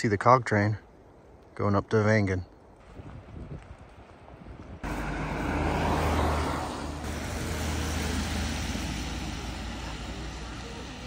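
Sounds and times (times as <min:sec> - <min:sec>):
train rushing noise: 0:04.8 - 0:11.0.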